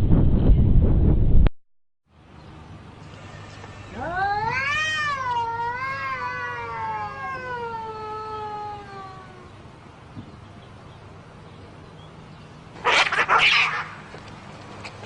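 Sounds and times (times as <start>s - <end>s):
cat yowling: 3.9s - 9.6s, 12.8s - 14.0s.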